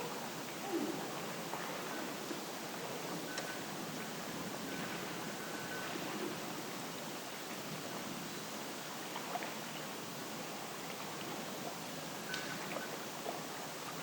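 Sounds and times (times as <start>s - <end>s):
hiss-like outdoor noise: 0.0s - 14.0s
faint ticks: 12.2s - 12.9s.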